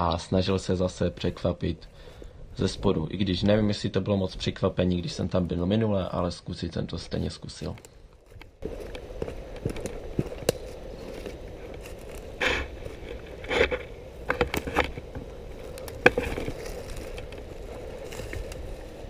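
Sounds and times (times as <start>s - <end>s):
footsteps in dry undergrowth: 0.0s - 19.0s
twig snapping: 9.6s - 15.0s, 15.6s - 18.8s.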